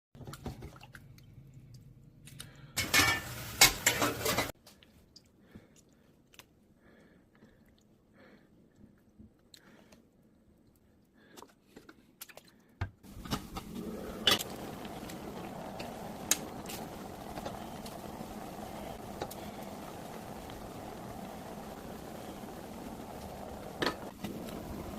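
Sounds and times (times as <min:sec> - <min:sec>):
dishes and utensils clinking: 0:02.8 - 0:04.5
pot boiling hiss: 0:02.8 - 0:04.6, 0:13.0 - 0:24.9.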